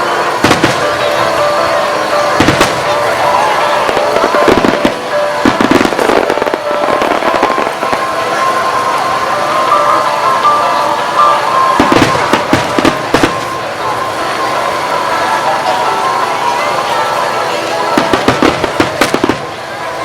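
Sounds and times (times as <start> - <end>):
fireworks bursting: 0.0 - 20.0
fireworks display music: 0.0 - 20.0.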